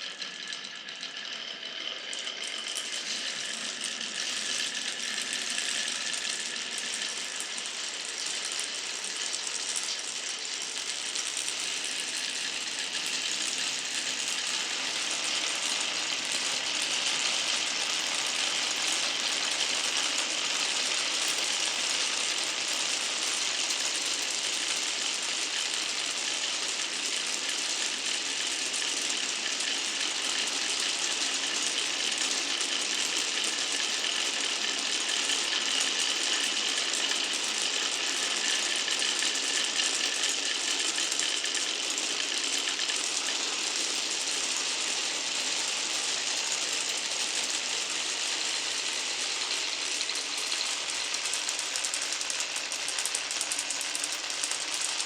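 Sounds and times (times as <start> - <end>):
glass marbles rolling on wood: 38.5 - 55.0.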